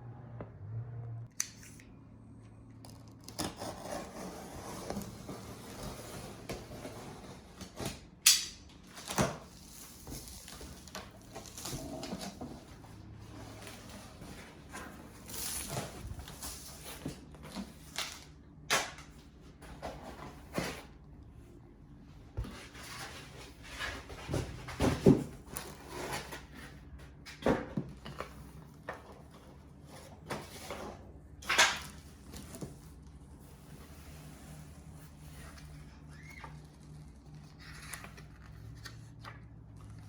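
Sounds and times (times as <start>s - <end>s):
cardboard and plastic rustling: 8.8s - 18.4s, 22.4s - 40.0s.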